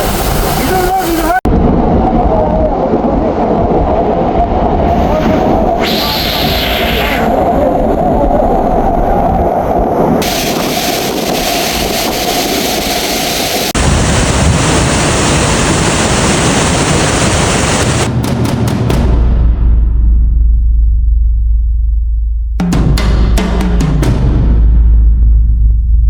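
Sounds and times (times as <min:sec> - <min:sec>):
waterfall roaring: 0:00.0 - 0:01.4, 0:10.2 - 0:18.1.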